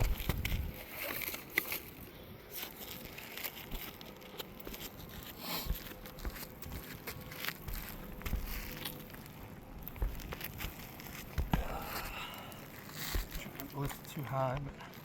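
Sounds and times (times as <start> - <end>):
rustling and light ticks: 0.0 - 15.0.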